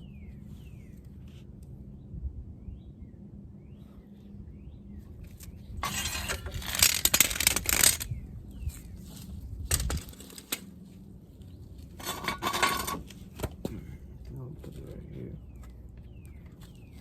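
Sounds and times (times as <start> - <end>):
metal clattering: 12.0 - 13.0.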